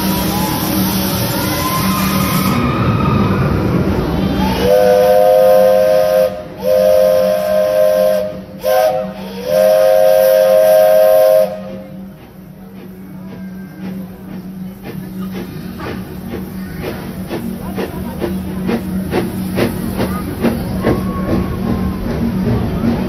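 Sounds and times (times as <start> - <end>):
steam hissing: 0.0 - 23.0
steam whistle chord blasts: 4.4 - 11.9.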